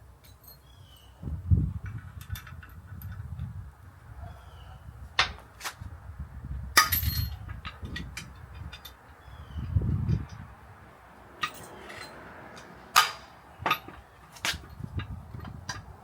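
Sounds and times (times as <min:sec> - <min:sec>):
wind rumble on microphone: 0:00.8 - 0:11.0, 0:13.5 - 0:16.0
metal tools clinking: 0:06.8 - 0:09.2, 0:11.4 - 0:12.3, 0:13.0 - 0:15.8.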